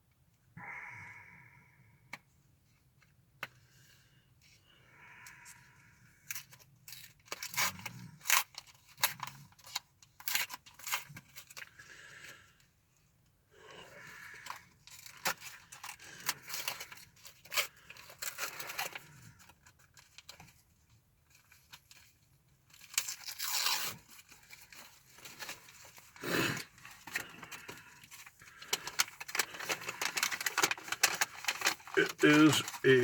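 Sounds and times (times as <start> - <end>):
wrapper crinkling: 22.7 - 33.0
wrapper tearing: 22.7 - 33.0.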